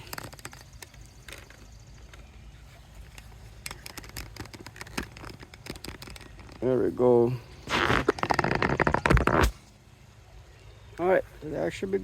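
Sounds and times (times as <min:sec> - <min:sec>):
camera handling clicks and rustles: 0:03.0 - 0:06.6.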